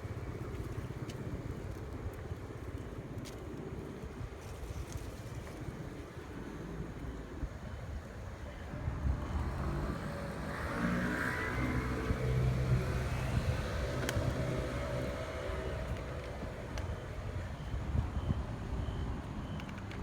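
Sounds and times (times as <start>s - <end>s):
vehicle engine passing by: 9.2s - 15.8s.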